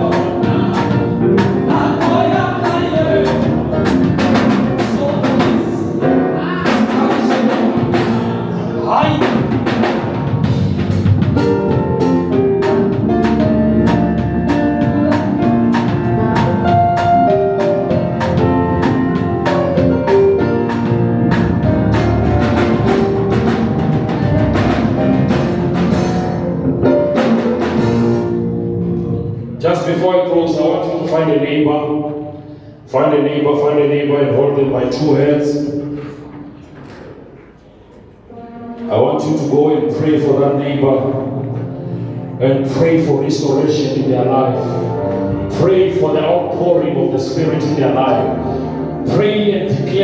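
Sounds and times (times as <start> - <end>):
voices singing: 0.0 - 9.6
drum kit steady beat: 0.0 - 28.8
gospel band music: 0.0 - 50.0.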